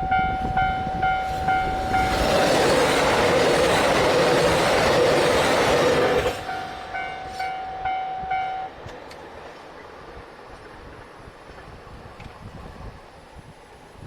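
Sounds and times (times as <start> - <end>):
level-crossing warning bell: 0.0 - 3.2, 6.4 - 9.0
steady warning tone: 0.0 - 4.0
passing train noise: 0.0 - 14.0.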